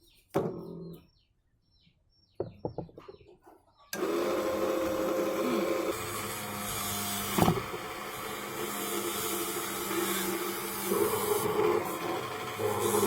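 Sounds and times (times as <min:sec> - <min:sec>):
small electric motor humming: 0:04.0 - 0:13.0.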